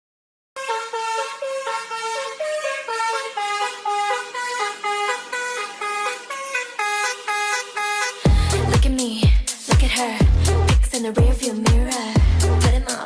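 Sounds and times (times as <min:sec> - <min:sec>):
tune in car-horn honks: 0:00.6 - 0:08.7
heavy kick-drum beat: 0:08.2 - 0:13.0.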